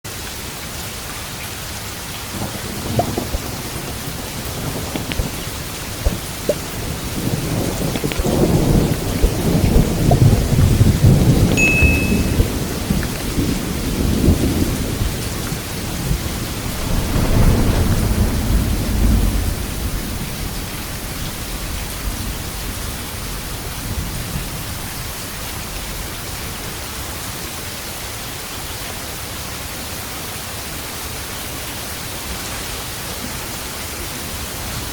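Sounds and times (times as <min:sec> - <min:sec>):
steady rain: 0:00.1 - 0:34.9
rolling thunder rumble: 0:02.2 - 0:26.8.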